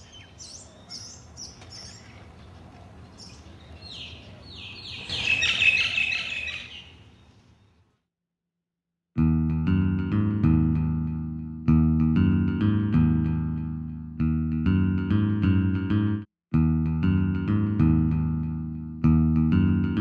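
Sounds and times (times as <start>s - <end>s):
birds chirping: 0.0s - 7.9s.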